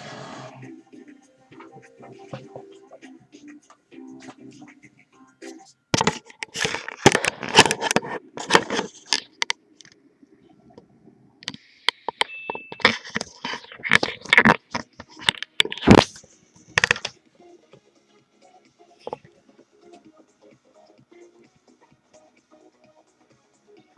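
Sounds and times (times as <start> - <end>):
sharp pops and cracks: 13.8 - 16.2.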